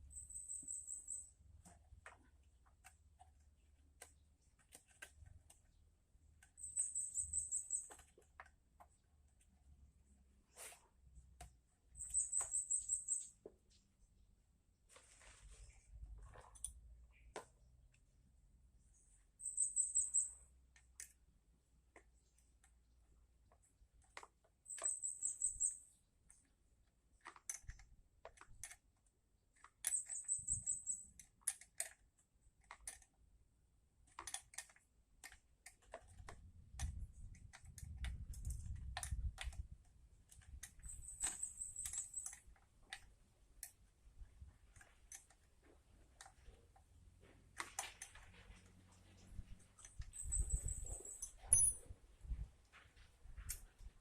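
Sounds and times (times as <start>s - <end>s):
high chirping trills: 6.5s - 7.9s, 12.0s - 13.4s, 19.4s - 20.4s.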